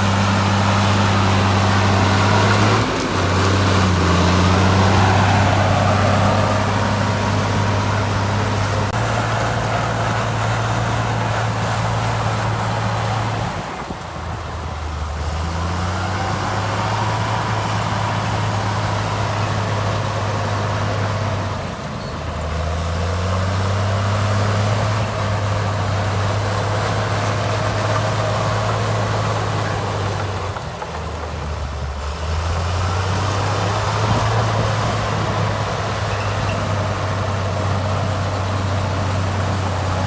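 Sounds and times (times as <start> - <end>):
heavy diesel engine running: 0.0 - 40.0.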